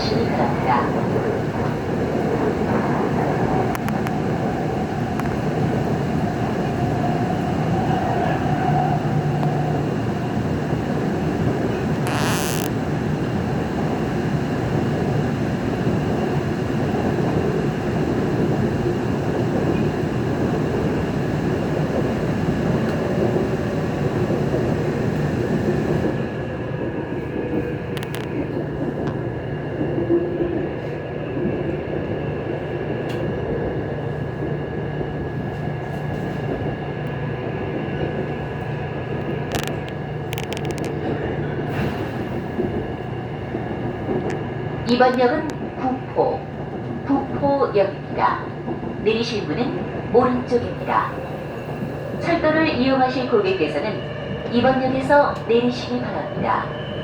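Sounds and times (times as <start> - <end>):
train wheels rumbling on track: 0.0 - 57.0.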